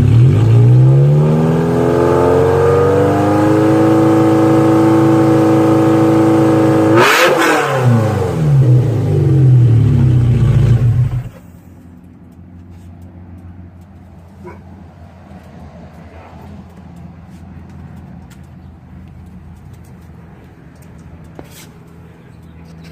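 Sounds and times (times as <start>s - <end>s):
loud engine revving: 0.0s - 11.4s.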